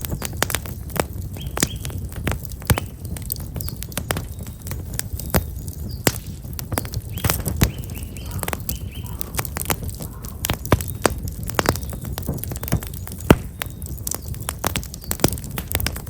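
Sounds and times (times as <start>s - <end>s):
fire crackling and popping: 0.0s - 16.0s
small birds chirping: 0.0s - 16.0s.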